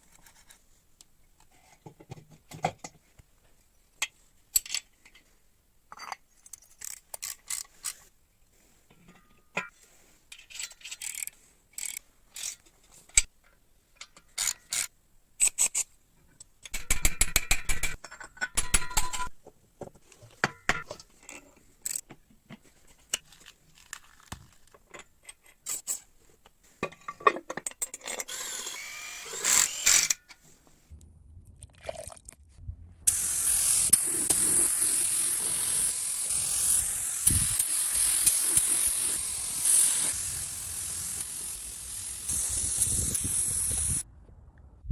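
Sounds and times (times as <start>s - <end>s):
spray hissing: 33.1s - 44.0s.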